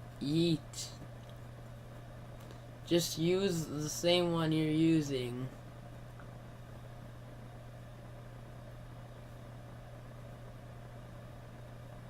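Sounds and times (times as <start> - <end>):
low electrical hum with hiss: 0.0 - 12.0.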